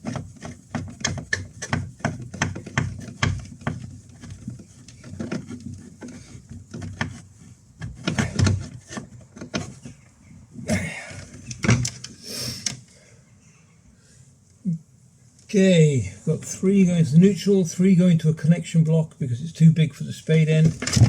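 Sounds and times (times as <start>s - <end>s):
clicks and taps handling wires: 0.0s - 10.1s, 11.2s - 12.8s.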